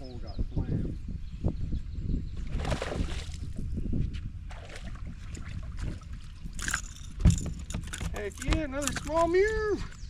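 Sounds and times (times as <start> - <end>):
water sloshing around boat: 4.5 - 9.4.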